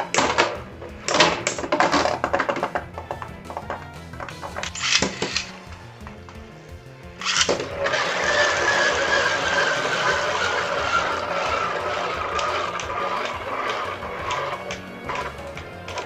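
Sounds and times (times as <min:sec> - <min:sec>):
spinning tops whirring on plastic: 0:00.0 - 0:06.5, 0:07.1 - 0:16.0
spinning tops launched: 0:04.6 - 0:05.7, 0:07.2 - 0:15.4.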